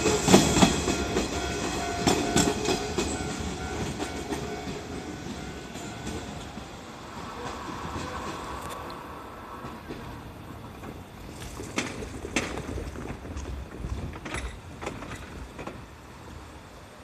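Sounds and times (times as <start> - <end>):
wheels clacking over rails: 0.0 - 16.4.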